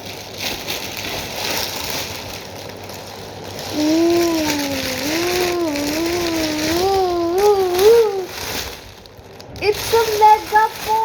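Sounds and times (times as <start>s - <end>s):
plastic packaging rustling: 0.0s - 11.0s.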